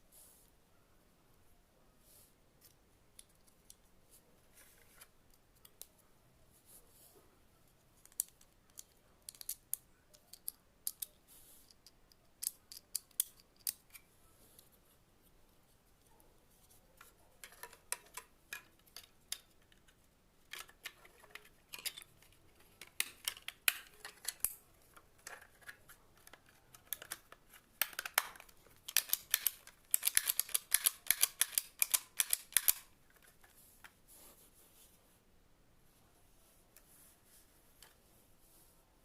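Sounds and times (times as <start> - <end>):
sharp clicks and snips: 26.7 - 32.9.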